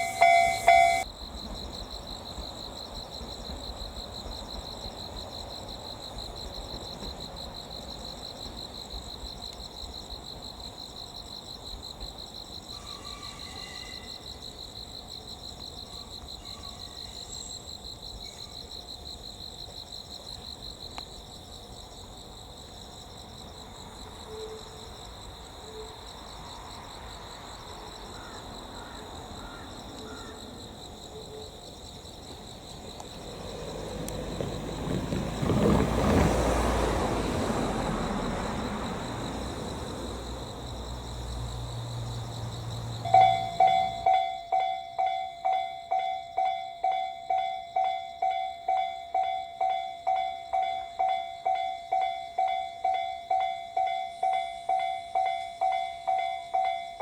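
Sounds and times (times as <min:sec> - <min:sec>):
electric train rumble: 0:00.0 - 0:09.3, 0:23.4 - 0:44.7
insects trilling: 0:00.0 - 0:57.0.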